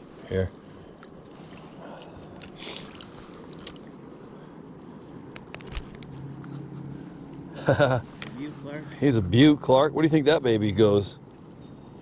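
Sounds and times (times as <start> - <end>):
river water flowing: 0.0 - 12.0
small clicks: 5.3 - 6.2.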